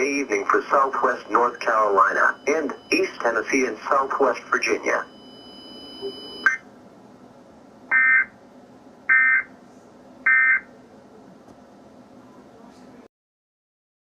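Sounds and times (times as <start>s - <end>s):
buzzy data bursts: 0.0s - 6.6s.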